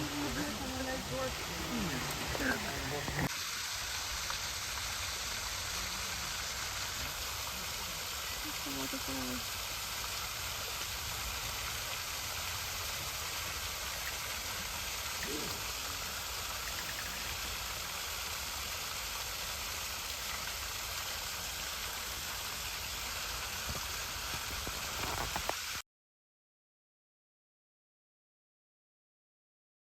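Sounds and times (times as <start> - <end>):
waterfall rushing and splashing: 0.0 - 25.7.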